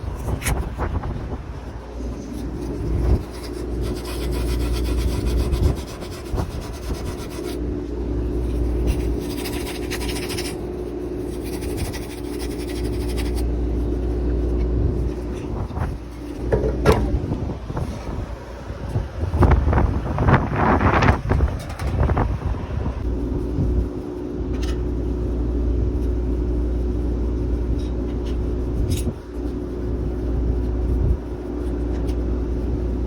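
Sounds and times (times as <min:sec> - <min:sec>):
fast rasping strokes: 0:00.0 - 0:14.2
wind on microphone: 0:00.0 - 0:24.2, 0:28.4 - 0:31.5
steady low hum: 0:00.0 - 0:33.0.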